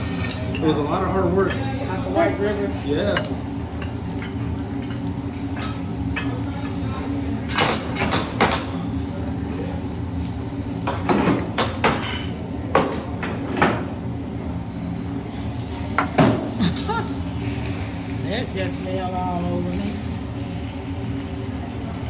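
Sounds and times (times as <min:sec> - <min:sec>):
metal utensils clanking on griddle: 0:00.0 - 0:06.9, 0:10.8 - 0:12.4
steady low hum: 0:00.0 - 0:22.0.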